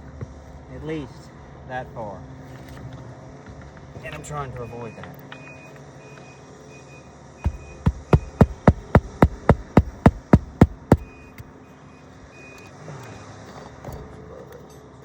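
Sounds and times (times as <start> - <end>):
hammer driving nail: 7.5 - 11.1.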